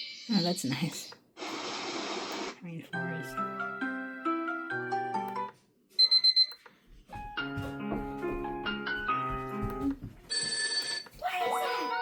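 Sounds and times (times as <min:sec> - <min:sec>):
high electronic beeps: 0:00.0 - 0:01.1.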